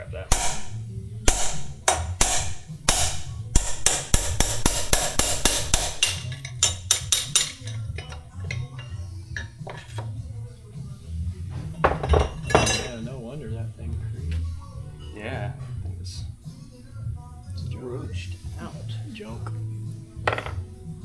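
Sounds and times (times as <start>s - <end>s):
hammer striking metal tool: 0.3s - 10.0s, 20.3s - 20.6s.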